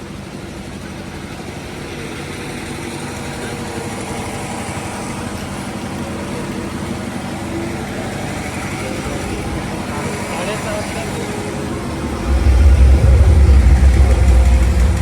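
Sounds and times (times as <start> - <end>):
heavy low bass drone: 11.9 - 15.0.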